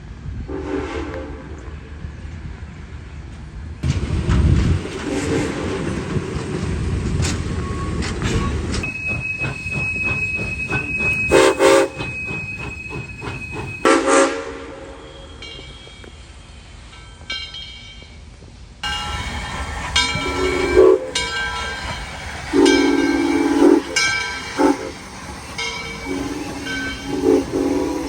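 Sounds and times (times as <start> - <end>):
steam locomotive rumble and beat: 0.0 - 28.0
steam whistle chord blasts: 11.3 - 12.0, 13.8 - 15.4, 18.8 - 21.4, 22.5 - 25.0, 25.6 - 28.0.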